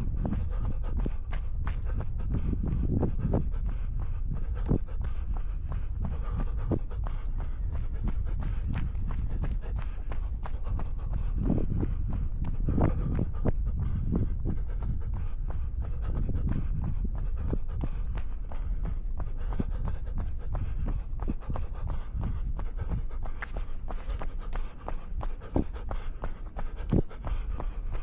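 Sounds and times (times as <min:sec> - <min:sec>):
person breathing hard: 0:00.0 - 0:28.0
footsteps on snow: 0:23.3 - 0:24.8.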